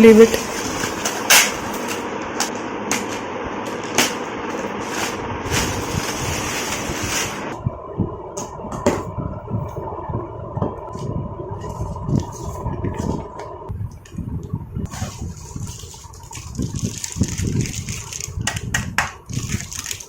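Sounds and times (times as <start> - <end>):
kitchen mixer grinder running: 0.0 - 7.6.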